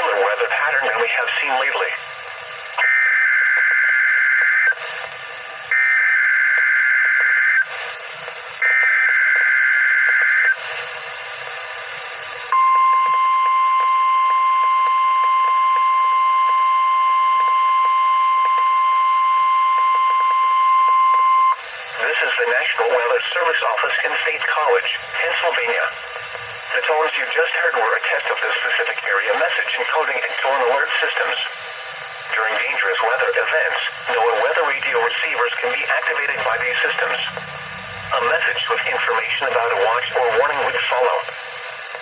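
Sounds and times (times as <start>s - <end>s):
radio hiss: 0.0s - 42.0s
steady alarm tone: 0.3s - 4.8s, 8.4s - 23.0s, 35.2s - 41.9s.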